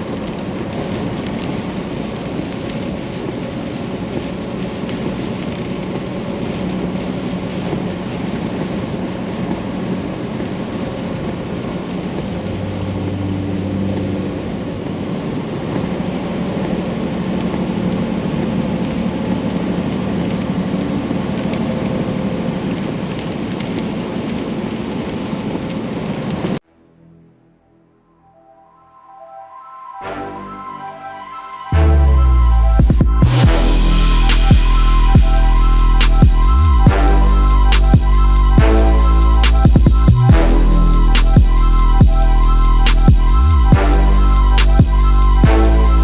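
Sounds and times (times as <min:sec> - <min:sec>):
heavy rain on vehicle: 0:00.0 - 0:26.6, 0:33.4 - 0:46.0
engine and road noise hum: 0:05.6 - 0:22.2.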